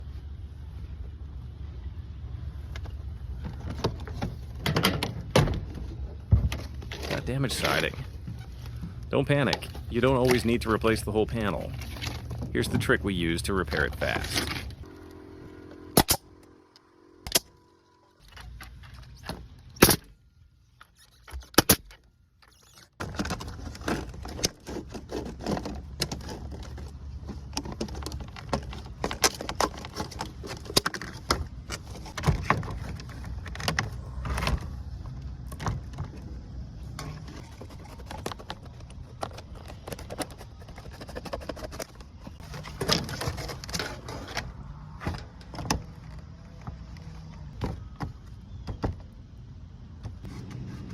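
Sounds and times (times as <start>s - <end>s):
low steady rumble: 0.0s - 20.9s
vinyl siding clicking and clattering: 2.8s - 12.9s, 20.7s - 49.2s.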